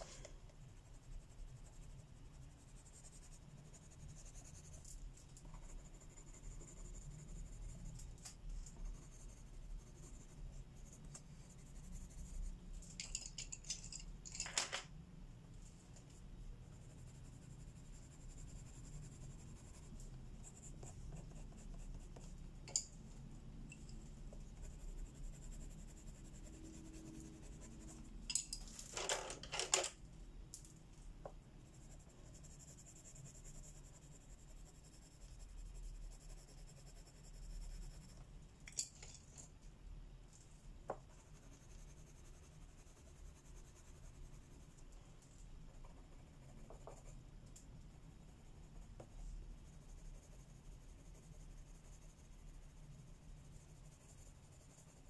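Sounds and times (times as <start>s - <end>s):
pencil scratching on paper: 0.0s - 12.6s, 16.7s - 22.5s, 23.8s - 28.2s, 31.6s - 38.3s, 40.9s - 47.2s, 48.1s - 55.0s.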